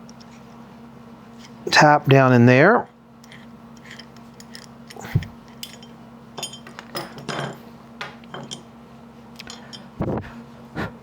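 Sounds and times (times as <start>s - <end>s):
metal parts clinking on workbench: 3.2s - 8.7s, 9.4s - 9.9s.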